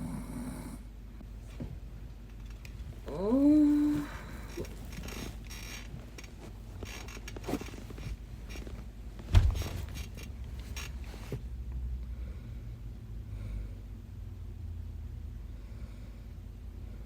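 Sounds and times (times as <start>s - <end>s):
woman snoring heavily: 0.0s - 0.8s, 3.1s - 4.8s.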